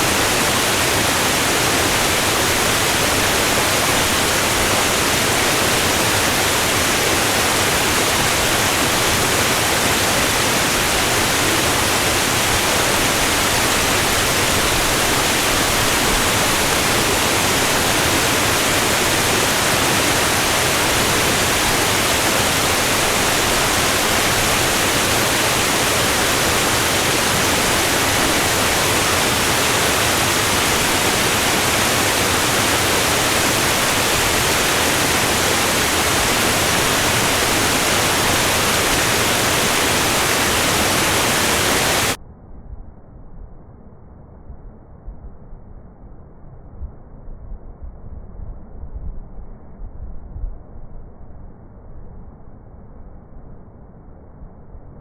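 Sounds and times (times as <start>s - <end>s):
waterfall rushing: 0.0s - 42.2s.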